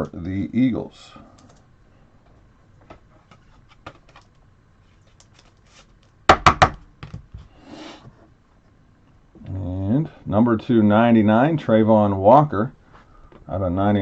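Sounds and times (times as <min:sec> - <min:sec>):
sharp knocks: 0:06.3 - 0:07.2.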